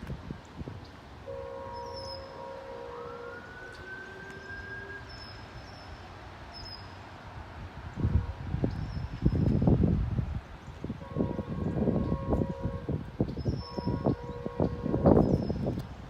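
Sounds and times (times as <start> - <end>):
distant train horn: 1.2 - 7.1, 7.9 - 9.6, 10.9 - 15.9.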